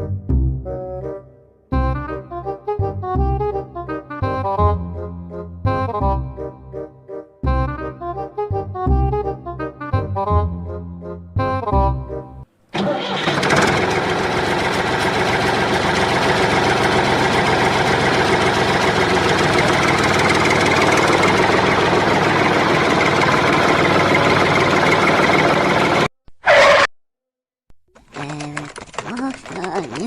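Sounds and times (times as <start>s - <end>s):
music: 0.0s - 12.5s
engine starting and running: 12.7s - 26.9s.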